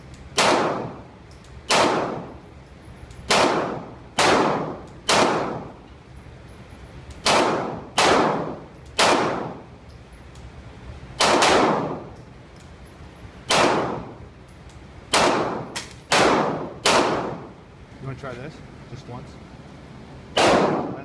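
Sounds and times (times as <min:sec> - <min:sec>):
pistol shots with echo: 0:00.4 - 0:01.0, 0:01.7 - 0:02.4, 0:03.3 - 0:05.7, 0:07.2 - 0:09.7, 0:11.2 - 0:12.1, 0:13.5 - 0:14.2, 0:15.1 - 0:17.5, 0:20.3 - 0:21.0.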